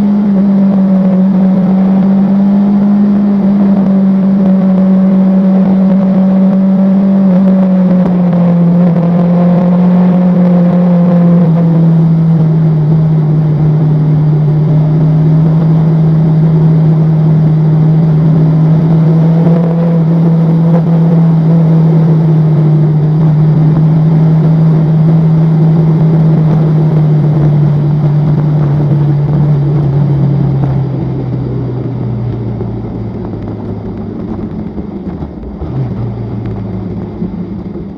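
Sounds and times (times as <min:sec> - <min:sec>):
vehicle engine humming: 0:00.0 - 0:37.9.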